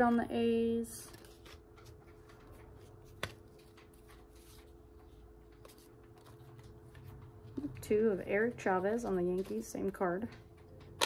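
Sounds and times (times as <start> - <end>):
cards rustling: 0.9 - 7.8.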